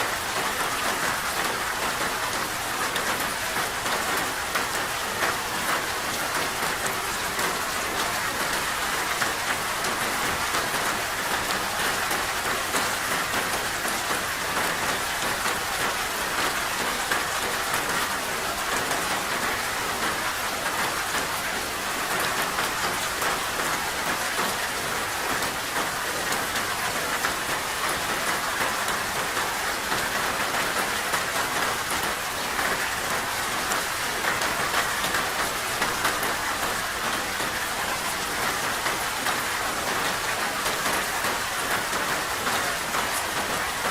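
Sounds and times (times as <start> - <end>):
rain falling: 0.0 - 43.9.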